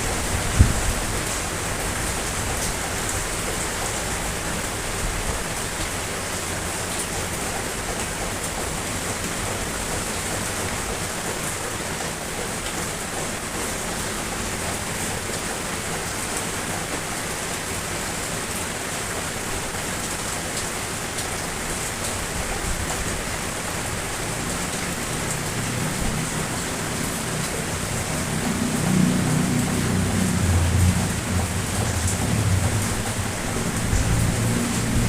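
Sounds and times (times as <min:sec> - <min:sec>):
steady rain falling: 0:00.0 - 0:35.0
low rumble: 0:28.6 - 0:35.0.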